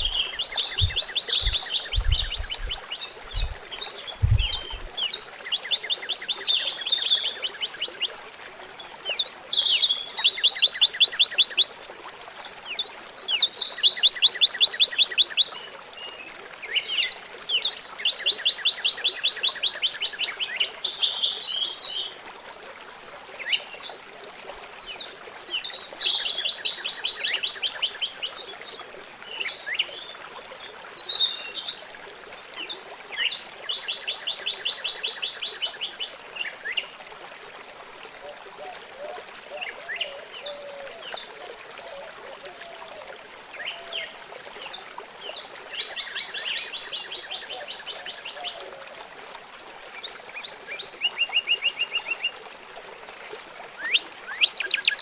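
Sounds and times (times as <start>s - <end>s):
songbirds chirping: 0.0s - 8.2s, 53.1s - 55.0s
running water trickling: 0.0s - 55.0s
bird trills: 53.8s - 55.0s.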